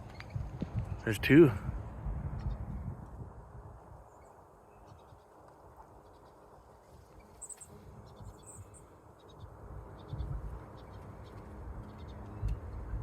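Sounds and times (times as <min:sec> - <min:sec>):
wind rumble on microphone: 0:00.0 - 0:13.0
songbirds high short chirps: 0:07.1 - 0:12.6.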